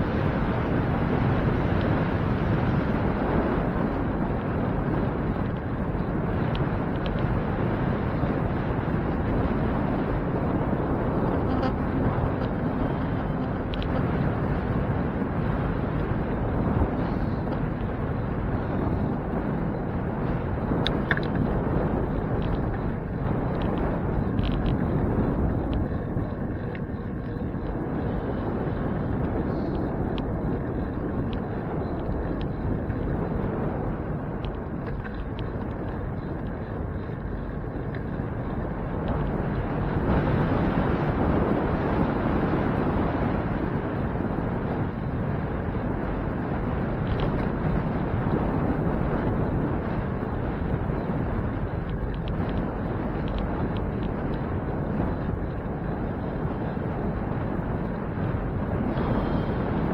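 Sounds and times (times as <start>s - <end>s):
wind and road noise from bicycle: 0.0s - 59.9s
faint ticks: 11.4s - 14.8s, 20.7s - 28.2s, 28.9s - 41.0s, 47.0s - 56.0s.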